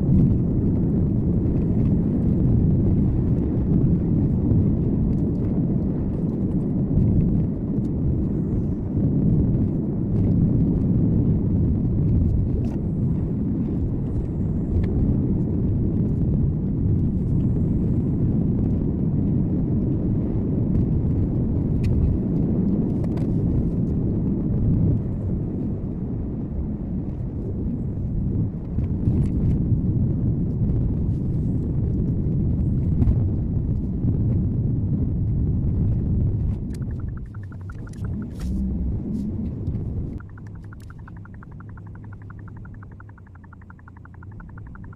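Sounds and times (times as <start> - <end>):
car interior road rumble: 36.2 - 44.9
faint ticks: 36.7 - 38.4, 40.2 - 44.9.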